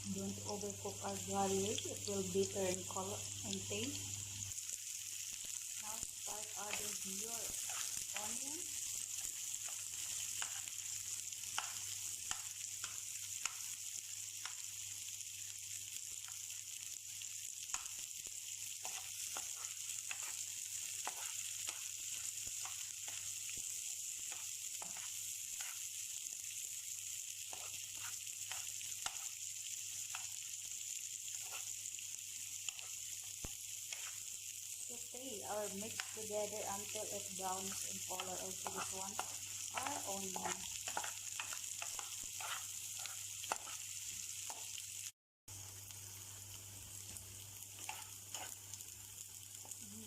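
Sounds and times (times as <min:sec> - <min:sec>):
garlic and onion sizzling in oil: 0:00.0 - 0:50.0
utensil clicking and scraping pan: 0:18.8 - 0:23.2, 0:36.8 - 0:43.8, 0:47.8 - 0:48.6.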